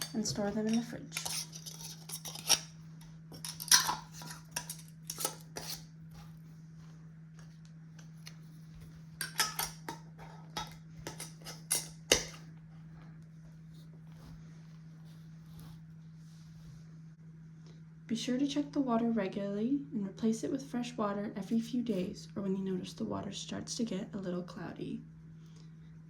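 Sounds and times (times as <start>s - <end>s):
steady low hum: 0.0s - 26.0s
glass jars clinking and knocking: 3.3s - 5.4s, 9.2s - 12.4s.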